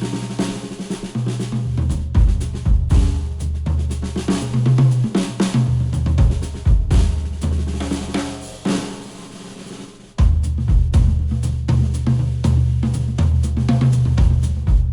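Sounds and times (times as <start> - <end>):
drum kit: 0.0 - 14.9
bass line: 1.5 - 4.2, 5.6 - 8.0, 10.2 - 14.9.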